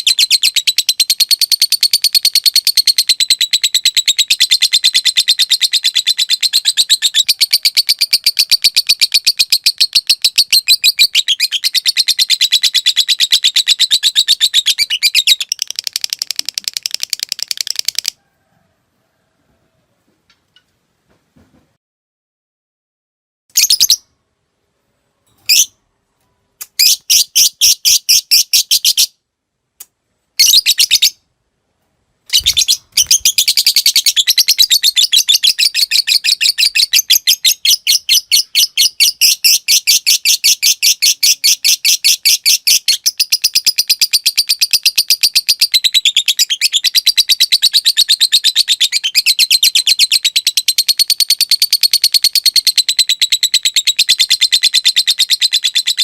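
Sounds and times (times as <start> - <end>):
lovebird chattering trill: 32.3 - 56.0.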